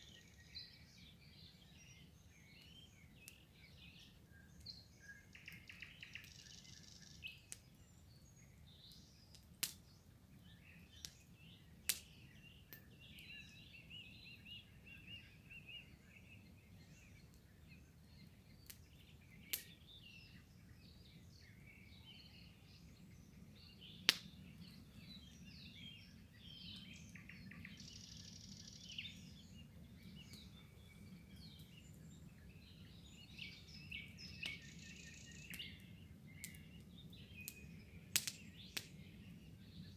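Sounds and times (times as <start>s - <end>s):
birds chirping and singing: 10.4s - 39.9s.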